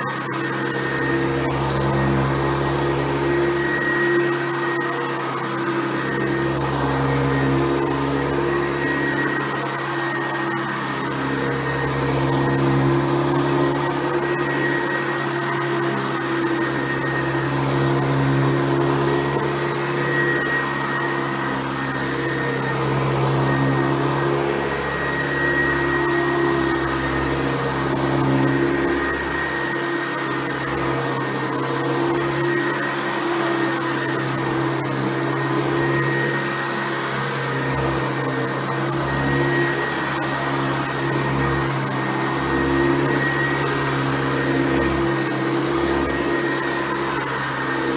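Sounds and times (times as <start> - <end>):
upright vacuum cleaner running: 0.0 - 47.9.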